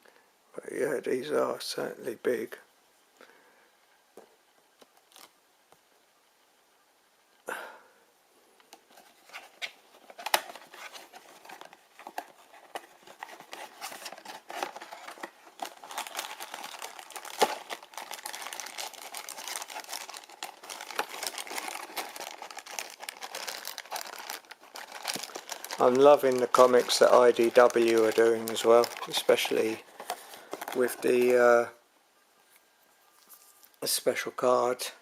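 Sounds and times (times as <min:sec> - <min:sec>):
plastic packaging crinkling: 0:05.0 - 0:05.3, 0:08.8 - 0:31.7.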